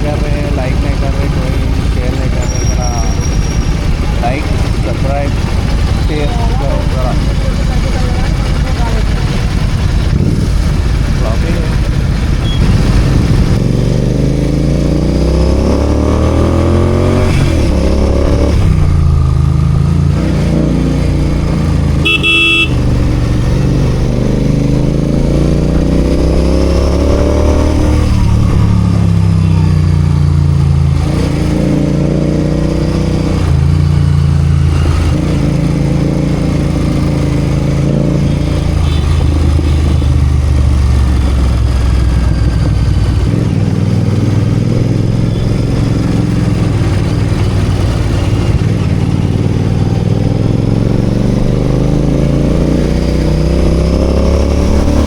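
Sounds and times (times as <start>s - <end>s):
motorcycle engine revving: 0.0s - 55.0s
vehicle horn toot: 22.0s - 22.8s.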